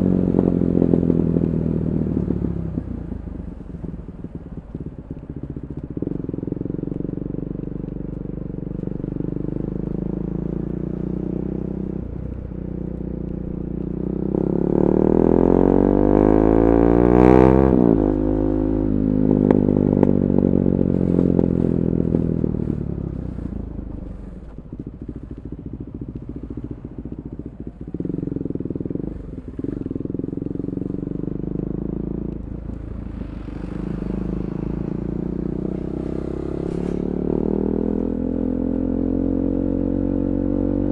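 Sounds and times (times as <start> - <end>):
motorcycle engine running: 0.0 - 40.9
exhaust crack: 11.9 - 39.2.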